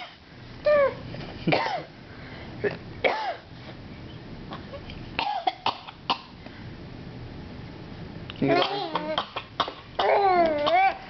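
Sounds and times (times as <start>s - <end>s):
woman coughing: 1.5s - 1.9s, 3.1s - 3.4s, 5.2s - 5.9s.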